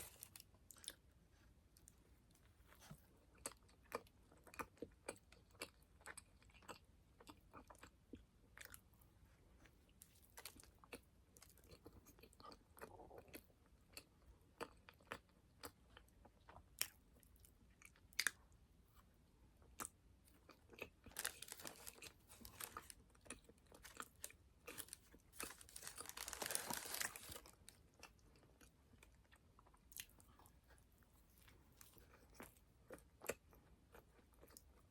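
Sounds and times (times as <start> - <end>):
chewing and biting: 19.6 - 34.9.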